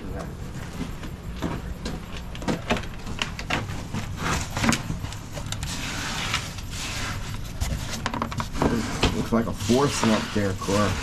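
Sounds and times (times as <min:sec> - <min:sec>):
shovels scraping wet concrete: 0:08.6 - 0:11.0
concrete pouring: 0:08.7 - 0:11.0.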